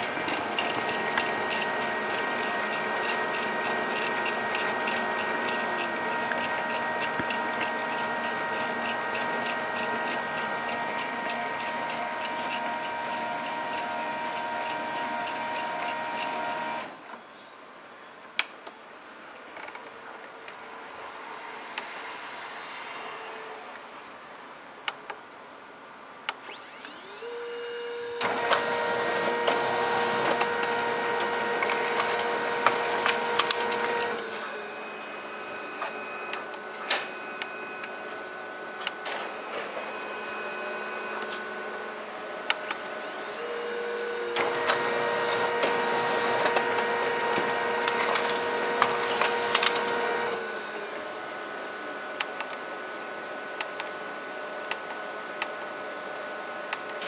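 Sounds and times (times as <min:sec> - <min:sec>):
machine clicks and ticks: 0:00.0 - 0:16.8, 0:30.2 - 0:34.2
office machine whirring hum: 0:00.0 - 0:17.2, 0:26.4 - 0:57.0.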